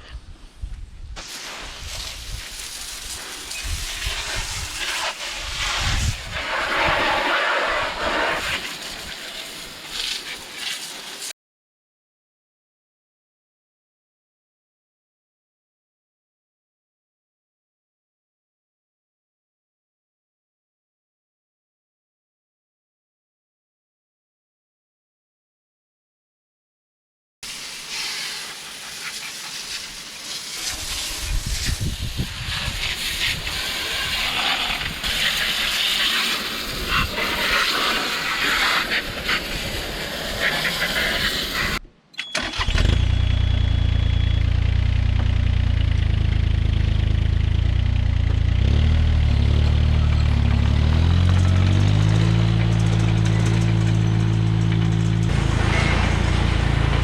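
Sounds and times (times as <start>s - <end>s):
water spray hissing: 1.2s - 11.3s, 27.4s - 41.8s
excavator diesel engine running: 42.4s - 57.0s.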